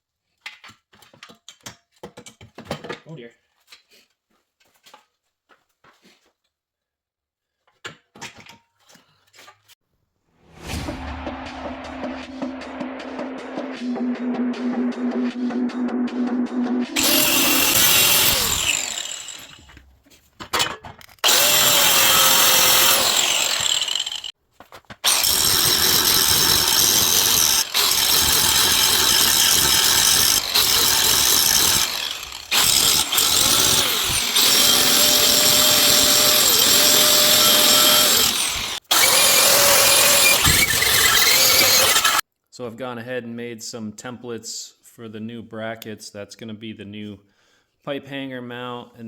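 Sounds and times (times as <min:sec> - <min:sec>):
electric power tool running: 0:11.2 - 0:19.7, 0:21.2 - 0:24.3, 0:25.1 - 0:42.2.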